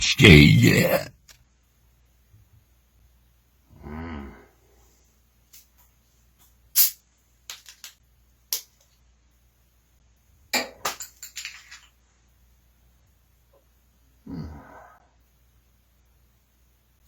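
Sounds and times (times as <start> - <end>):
soda bottles clicking and crackling: 7.5 - 8.9.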